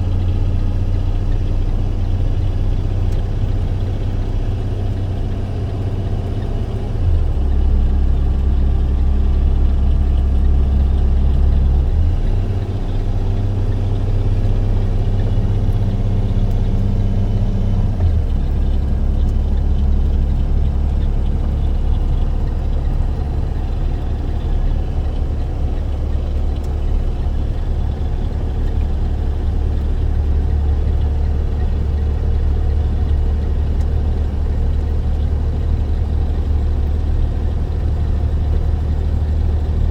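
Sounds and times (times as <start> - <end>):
road noise: 0.0 - 39.9
truck engine drone: 0.0 - 39.9.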